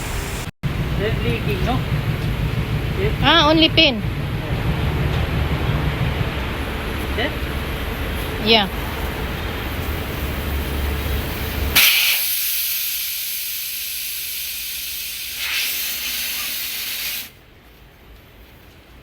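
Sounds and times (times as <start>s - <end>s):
low rumble: 0.0s - 11.8s
compressed air hissing from hose: 11.3s - 17.4s.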